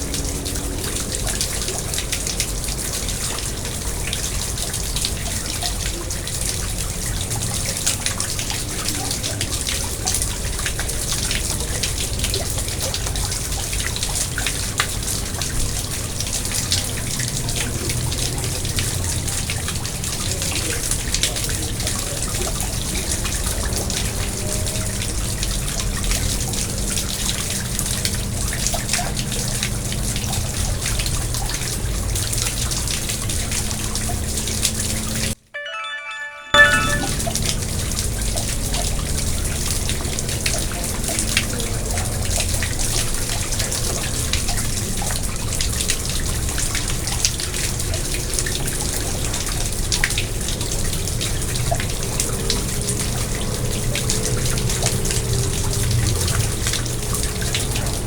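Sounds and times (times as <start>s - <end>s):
water drips and plops: 0.0s - 34.8s
water trickling into a pond: 0.0s - 35.1s, 36.6s - 58.0s.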